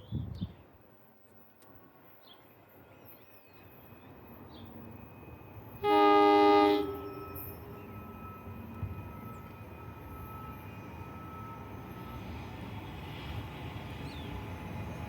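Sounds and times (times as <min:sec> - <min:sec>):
train rumbling: 0:00.3 - 0:15.0
train horn blast: 0:05.8 - 0:08.4.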